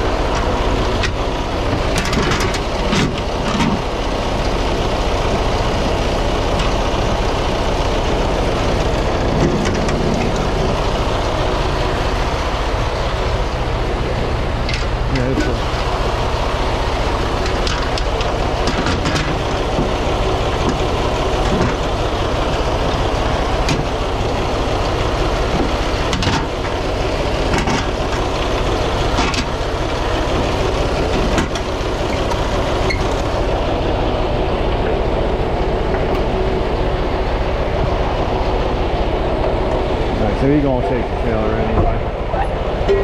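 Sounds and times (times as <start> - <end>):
diesel truck engine running: 0.0 - 43.0
sharp knocks and clanks: 0.3 - 3.9, 8.6 - 10.8, 14.6 - 15.7, 17.4 - 24.1, 24.8 - 33.4, 41.6 - 42.0.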